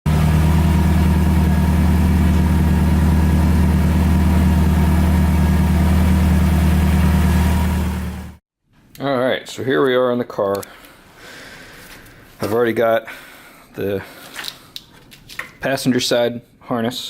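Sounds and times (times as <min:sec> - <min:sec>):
car engine idling: 0:00.1 - 0:08.4.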